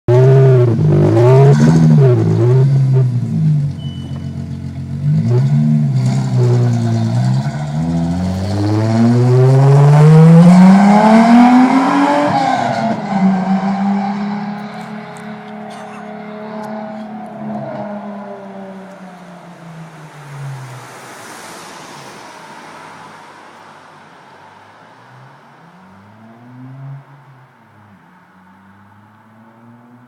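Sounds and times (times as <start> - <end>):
car engine revving: 0.1 - 19.6.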